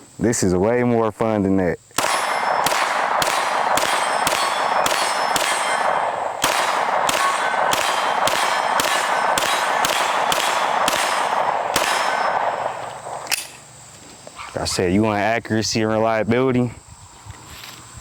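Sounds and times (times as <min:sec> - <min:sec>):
metallic clanging: 0:02.0 - 0:13.7
pistol shots: 0:02.0 - 0:13.7.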